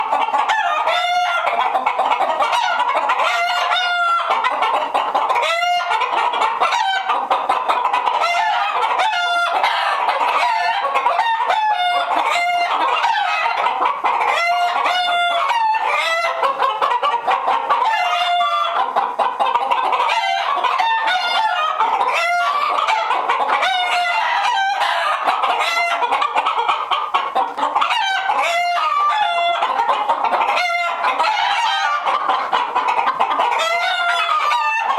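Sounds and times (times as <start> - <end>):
hens clucking and cackling: 0.0 - 34.9.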